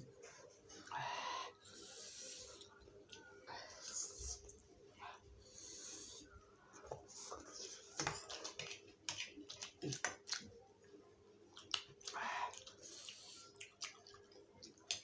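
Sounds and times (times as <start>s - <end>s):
hissing breaths: 5.4s - 6.4s
wet chewing and slurping: 7.7s - 10.5s, 11.5s - 15.0s.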